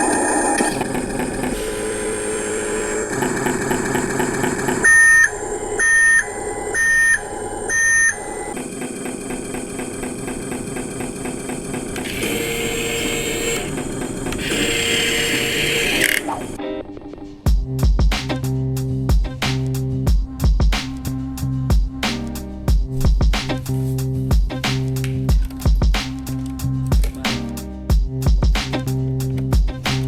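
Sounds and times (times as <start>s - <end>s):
electric toy truck running: 0.0s - 16.6s
loud electronic beeps: 4.5s - 8.6s, 12.1s - 16.6s.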